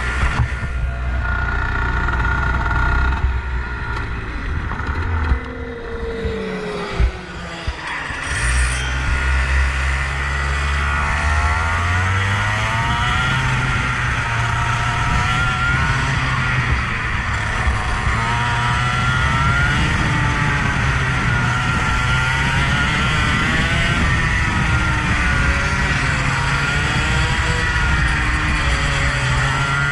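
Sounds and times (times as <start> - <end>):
low drone: 0.0 - 29.9
vehicle engine revving: 0.0 - 29.9.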